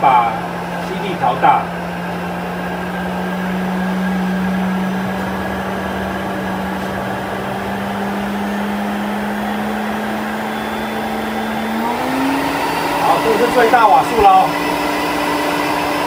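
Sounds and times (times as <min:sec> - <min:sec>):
vacuum cleaner motor hum: 0:00.0 - 0:16.0.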